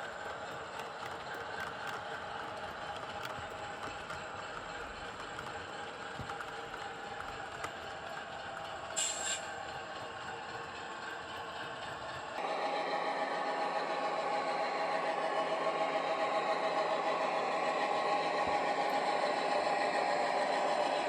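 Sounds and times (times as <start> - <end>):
model locomotive motor whirring: 0.0 - 21.0
brief hiss: 9.0 - 9.5.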